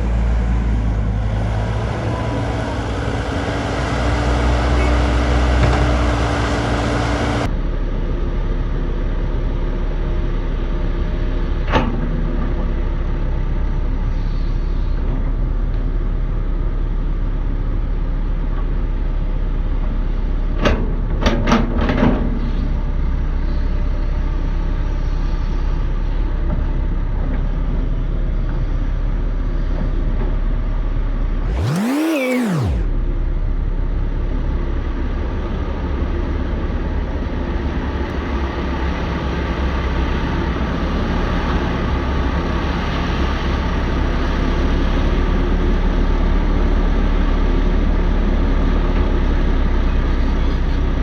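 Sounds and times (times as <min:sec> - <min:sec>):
excavator diesel engine running: 0:00.0 - 0:19.0, 0:22.4 - 0:51.0.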